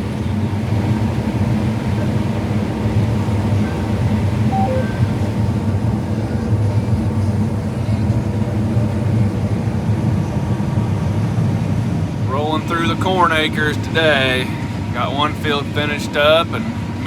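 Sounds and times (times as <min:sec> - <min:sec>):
combine harvester drone: 0:00.0 - 0:17.0
short faint tones: 0:04.5 - 0:05.2.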